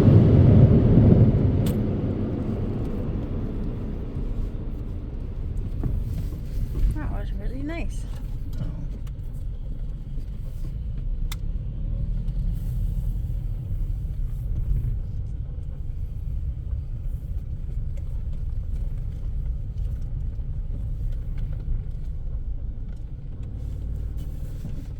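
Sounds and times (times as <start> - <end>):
car engine rumbling: 0.0 - 24.9.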